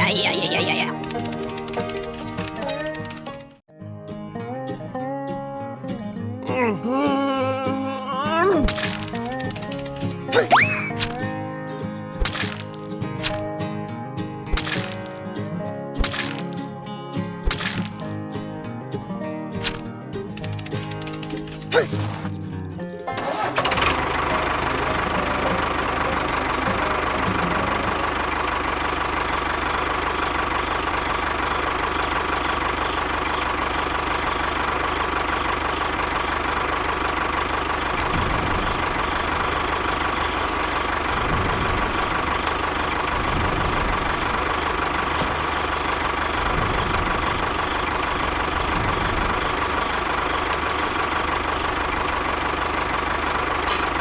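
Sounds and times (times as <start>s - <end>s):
engine idling: 0.0s - 3.6s, 8.6s - 13.5s, 19.6s - 54.0s.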